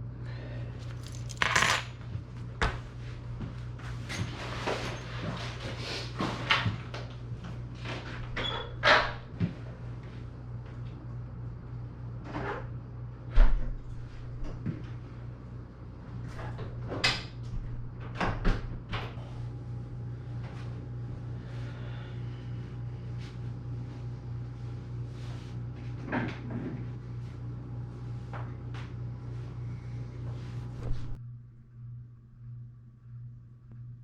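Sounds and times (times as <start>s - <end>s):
steady low hum: 0.0s - 34.0s
household things clattering: 1.0s - 2.0s.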